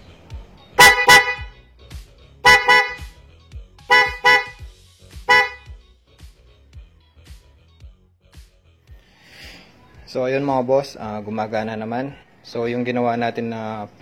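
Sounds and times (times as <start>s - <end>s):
scooter horn toots: 0.8s - 1.6s, 2.4s - 3.1s, 3.9s - 5.8s.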